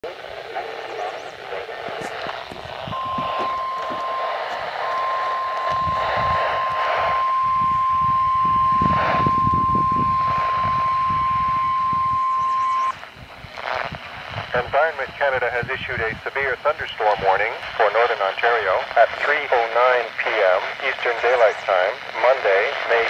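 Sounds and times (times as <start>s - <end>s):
radio static: 0.0s - 23.0s
steady loud alarm beep: 2.4s - 13.0s.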